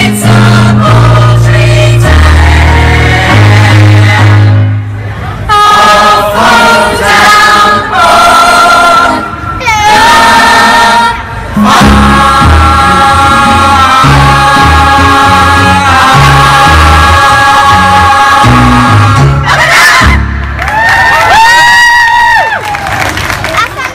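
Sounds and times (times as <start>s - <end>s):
cast singing together: 5.5s - 20.2s.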